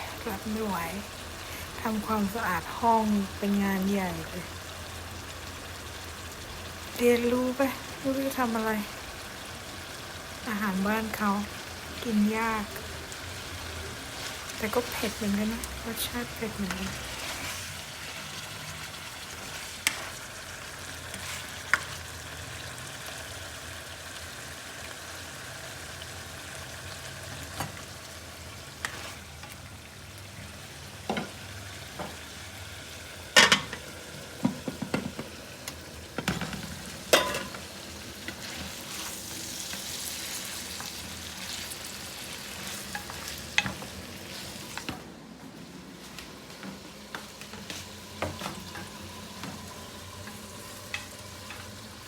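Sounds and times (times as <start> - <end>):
food sizzling in a pan: 0.0 - 52.0
utensil scraping a pan: 16.6 - 18.5, 19.3 - 20.3, 28.8 - 29.6.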